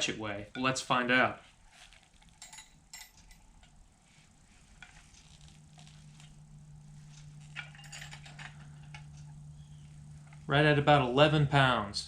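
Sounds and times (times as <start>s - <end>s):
steady low hum: 0.0s - 12.0s
light handling clicks and rustles: 7.0s - 9.5s.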